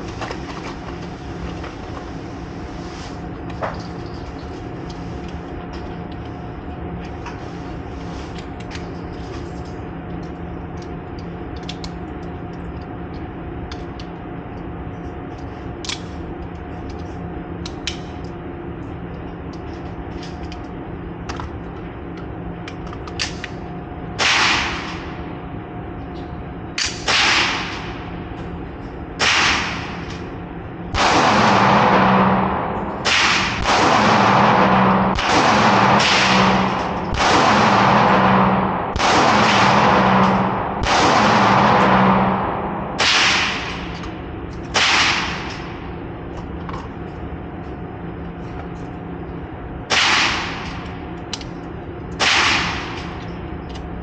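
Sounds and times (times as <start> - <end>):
steady background hum: 0.0 - 54.0
echoing gunshots: 24.2 - 25.1, 27.0 - 28.0, 29.2 - 30.1, 30.9 - 45.9, 49.9 - 50.8, 52.2 - 53.2.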